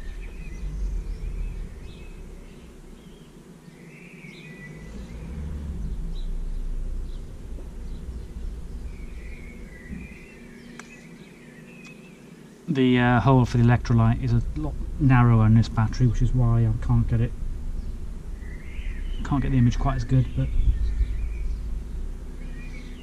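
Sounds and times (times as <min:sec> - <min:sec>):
birds chirping and warbling: 0:00.0 - 0:23.0
wind rumble on microphone: 0:04.7 - 0:10.6, 0:13.0 - 0:23.0.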